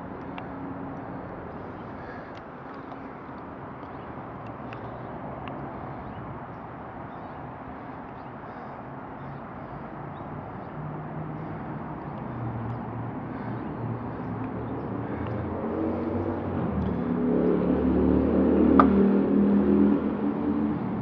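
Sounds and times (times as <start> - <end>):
engine running: 15.0 - 19.8.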